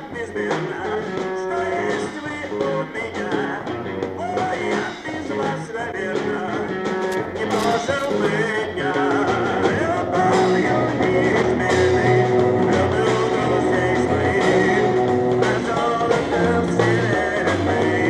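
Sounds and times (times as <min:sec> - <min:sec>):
rock band playing: 0:00.0 - 0:18.0.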